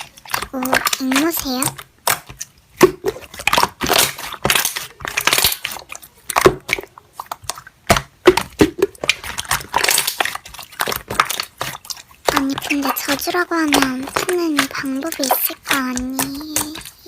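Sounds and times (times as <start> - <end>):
slime crackling and popping: 0.0 - 17.0.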